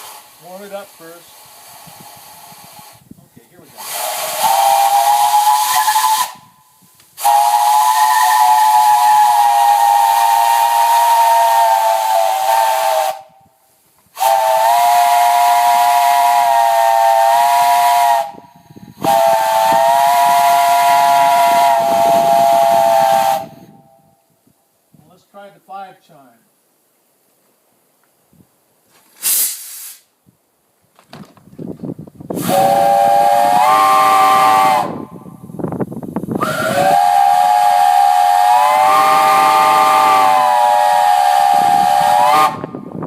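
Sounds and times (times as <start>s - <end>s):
rushing steam hiss: 0.0s - 23.9s, 28.9s - 30.2s, 32.3s - 43.0s
steam whistle chord blasts: 3.8s - 13.4s, 14.2s - 24.1s, 32.4s - 35.4s, 36.4s - 42.9s.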